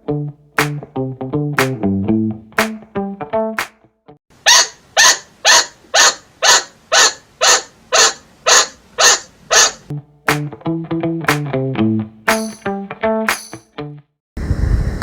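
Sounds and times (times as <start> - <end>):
chinchilla barking: 4.4 - 9.9.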